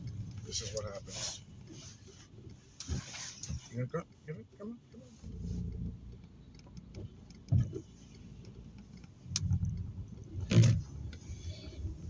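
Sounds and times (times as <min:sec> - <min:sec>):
car engine rumble in cabin: 0:00.0 - 0:12.0
faint ticks: 0:00.0 - 0:12.0
click: 0:05.7 - 0:11.3.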